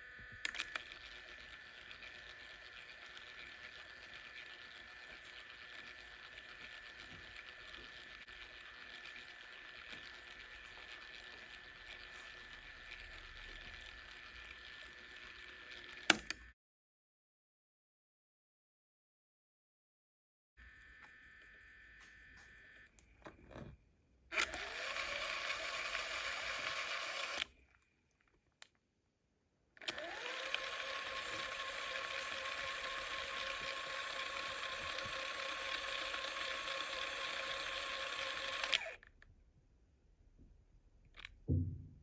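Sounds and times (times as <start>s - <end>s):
small electric motor whine: 0.0s - 16.5s, 20.6s - 23.7s, 24.3s - 27.5s, 29.8s - 39.1s
clicks: 15.9s - 16.5s, 29.8s - 39.2s.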